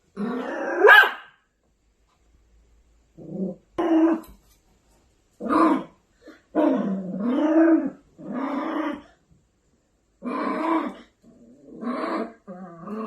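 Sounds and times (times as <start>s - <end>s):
puppy growling and barking: 0.0s - 1.4s, 3.2s - 4.4s, 5.4s - 9.2s, 10.2s - 13.0s.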